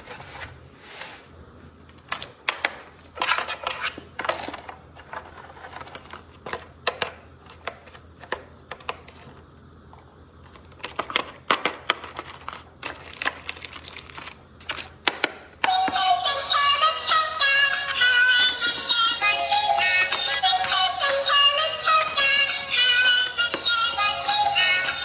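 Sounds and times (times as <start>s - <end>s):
packaging crinkling and clicking: 10.8s - 15.2s
music with synthetic singing voice: 15.6s - 25.0s.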